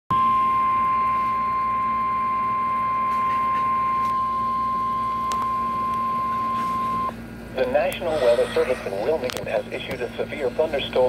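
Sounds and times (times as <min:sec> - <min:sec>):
steady high alarm tone: 0:00.1 - 0:07.2
low hum: 0:00.1 - 0:11.0.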